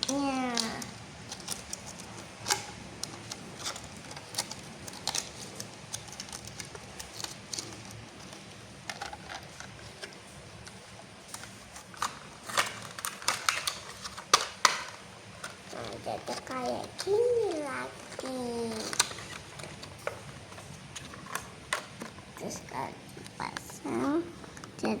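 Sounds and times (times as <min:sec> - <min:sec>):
plastic toy parts clicking: 0:00.0 - 0:10.1, 0:11.3 - 0:20.2.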